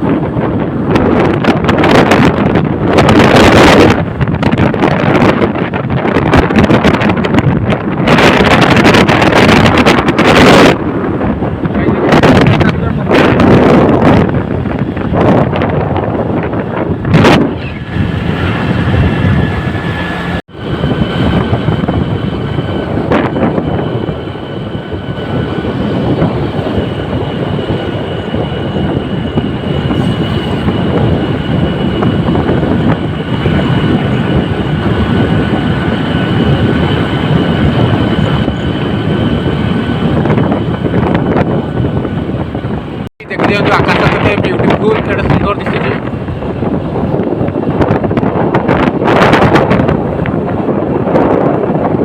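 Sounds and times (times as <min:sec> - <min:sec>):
vehicle road and engine noise: 0:00.0 - 0:52.0
wind buffeting microphone: 0:00.0 - 0:52.0.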